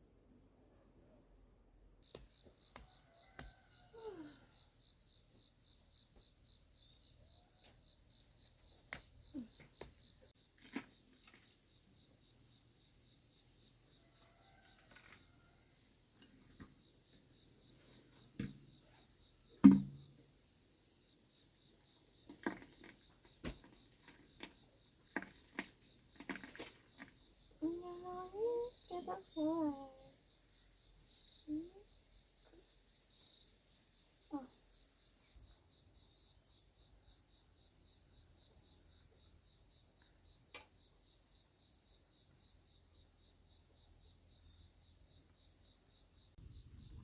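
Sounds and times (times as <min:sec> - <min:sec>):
high-pitched insect chorus: 0:00.1 - 0:47.0
short knocks: 0:19.6 - 0:20.1.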